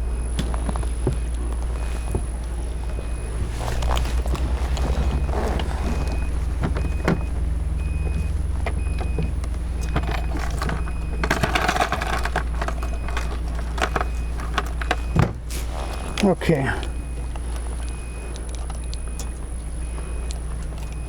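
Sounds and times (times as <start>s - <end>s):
vehicle engine rumbling: 0.0s - 21.0s
rustling: 0.4s - 16.2s.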